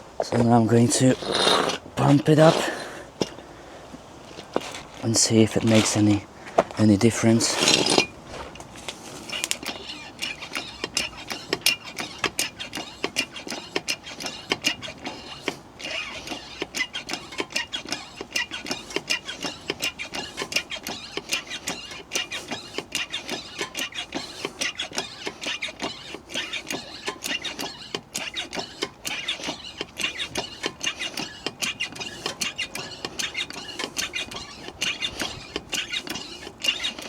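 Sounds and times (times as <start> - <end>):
hand pump squeaking and clicking: 0.1 - 3.5, 4.2 - 37.0.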